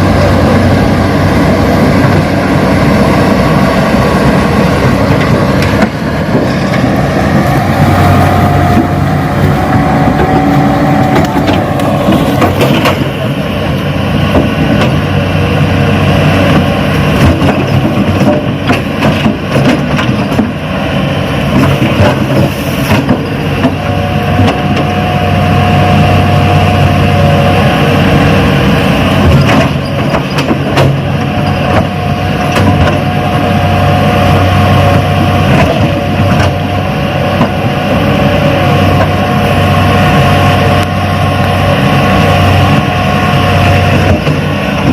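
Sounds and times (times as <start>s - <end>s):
model excavator humming: 0.0s - 44.9s.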